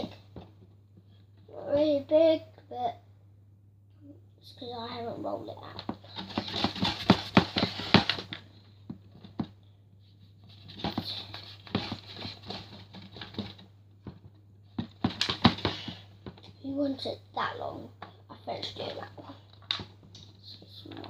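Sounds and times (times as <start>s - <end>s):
hands rolling and patting dough: 5.6s - 9.6s.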